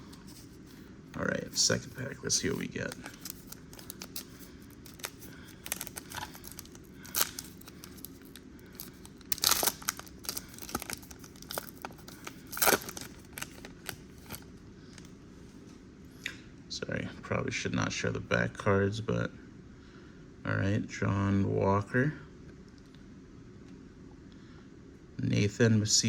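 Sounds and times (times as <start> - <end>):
wrapper tearing and crinkling: 1.4 - 14.5.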